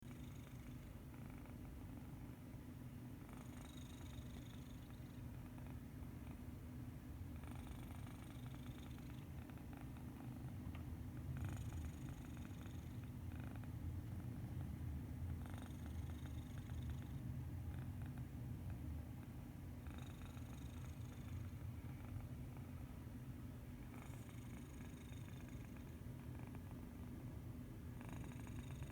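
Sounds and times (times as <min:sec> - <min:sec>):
cat snoring: 0:00.1 - 0:01.6, 0:03.2 - 0:06.4, 0:07.4 - 0:10.0, 0:11.4 - 0:13.7, 0:15.3 - 0:18.2, 0:19.8 - 0:22.2, 0:23.9 - 0:26.8, 0:28.0 - 0:28.9.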